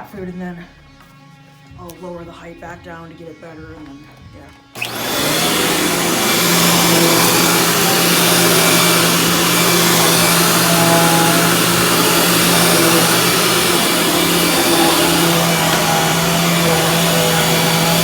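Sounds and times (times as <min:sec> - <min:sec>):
upright vacuum cleaner running: 0:04.8 - 0:18.0.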